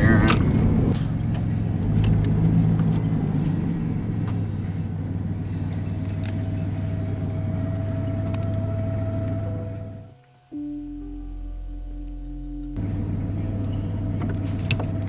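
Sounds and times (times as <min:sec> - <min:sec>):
car engine and road rumble: 0:00.0 - 0:15.0
faint steady tone: 0:05.5 - 0:15.0.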